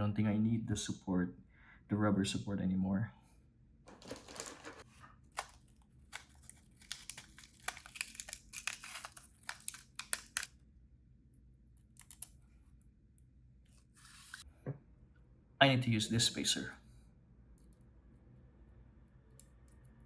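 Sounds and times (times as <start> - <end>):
plastic packaging rustling: 3.9 - 10.5.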